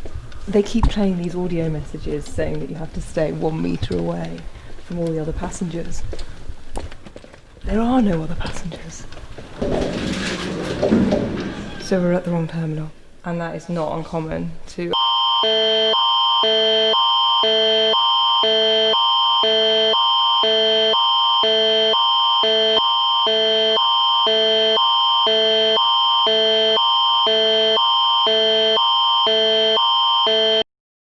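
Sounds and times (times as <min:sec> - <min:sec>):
two-tone alert alarm: 0:15.0 - 0:30.7.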